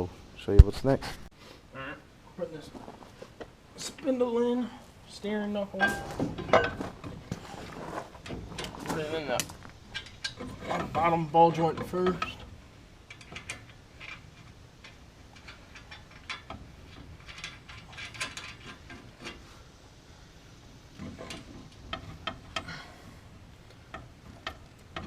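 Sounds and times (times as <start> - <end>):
light metal clicks and knocks: 8.2 - 19.5, 21.0 - 23.0, 23.6 - 25.0.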